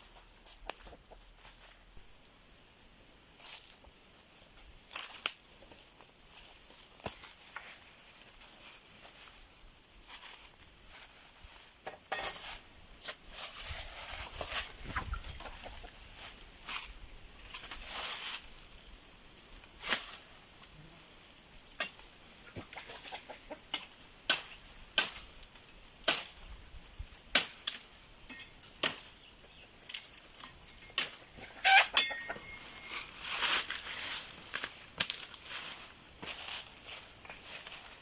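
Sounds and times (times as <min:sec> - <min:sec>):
chickens clucking: 0:00.4 - 0:01.7, 0:14.7 - 0:16.3, 0:22.3 - 0:23.8, 0:31.1 - 0:33.0
chicken squawk: 0:31.4 - 0:32.4.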